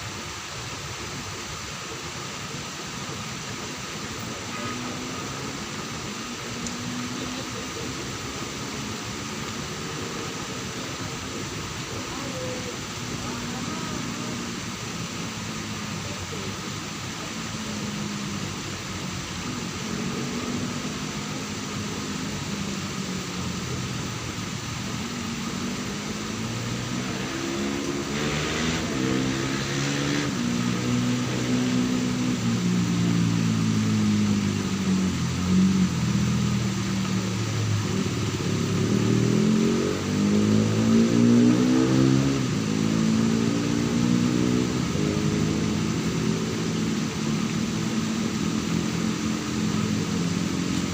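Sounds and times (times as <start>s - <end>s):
engine revving: 17.9s - 50.9s.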